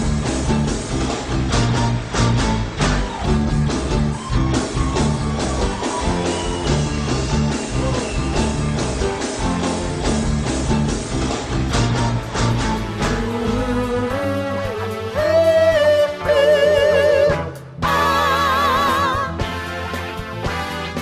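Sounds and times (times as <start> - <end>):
steady drum beat: 0.0 - 14.3
instrumental band music: 0.0 - 21.0.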